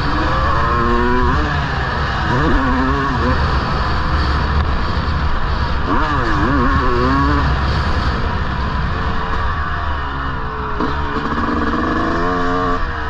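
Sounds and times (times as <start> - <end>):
motocross engine revving: 0.0 - 4.5, 5.6 - 8.3, 10.3 - 13.0.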